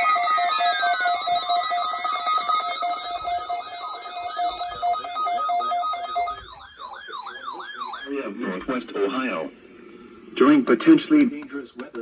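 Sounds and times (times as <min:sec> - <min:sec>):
electronic alarm beeping: 0:00.0 - 0:08.3
siren warble: 0:00.0 - 0:08.4.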